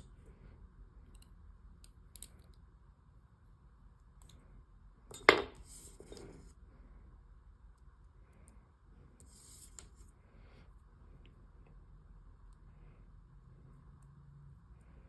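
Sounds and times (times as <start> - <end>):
faint clicks of metal parts: 1.0 - 2.7.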